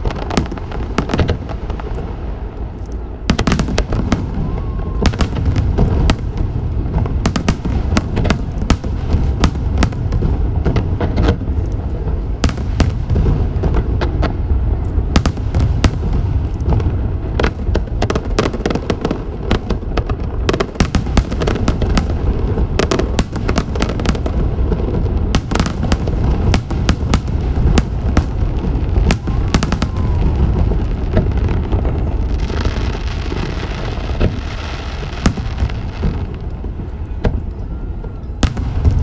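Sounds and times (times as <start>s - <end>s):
fireworks booming: 0.0s - 39.0s
fireworks cracking: 0.0s - 39.0s.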